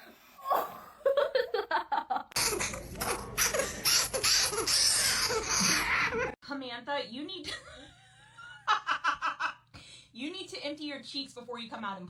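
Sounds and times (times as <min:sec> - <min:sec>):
person laughing: 0:01.0 - 0:06.4.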